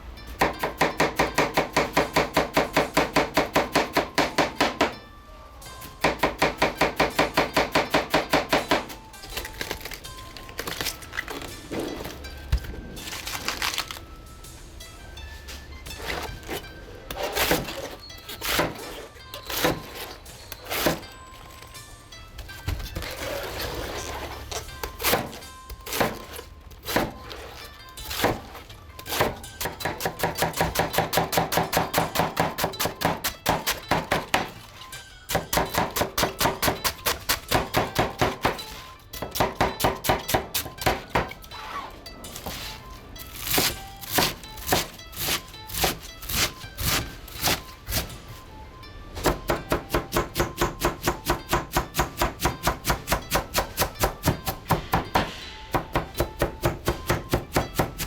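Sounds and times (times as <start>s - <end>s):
knife chopping on cutting board: 25.0s - 27.2s, 29.1s - 34.5s, 43.5s - 48.1s, 49.2s - 58.0s.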